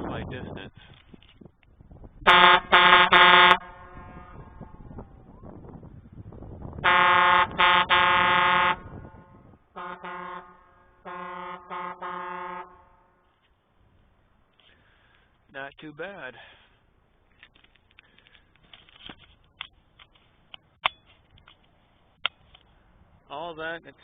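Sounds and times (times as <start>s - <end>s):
air horn blasts: 2.2s - 5.1s, 6.8s - 13.3s
echo of horn: 2.2s - 5.1s, 6.8s - 13.3s.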